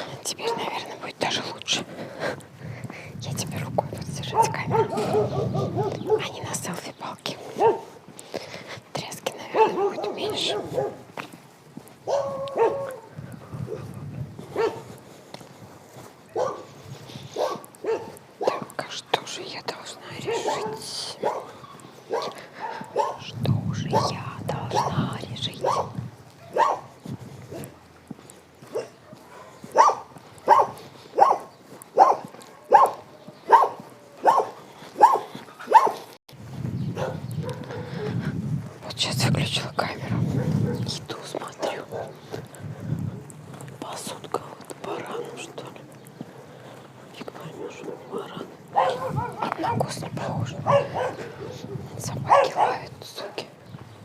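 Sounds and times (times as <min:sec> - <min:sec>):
dogs barking: 0:00.3 - 0:00.9, 0:04.2 - 0:06.4, 0:07.5 - 0:08.0, 0:09.4 - 0:11.2, 0:12.0 - 0:15.0, 0:16.3 - 0:18.8, 0:20.2 - 0:27.9, 0:28.6 - 0:36.2, 0:36.9 - 0:38.2, 0:40.3 - 0:42.6, 0:44.9 - 0:45.6, 0:47.5 - 0:53.5.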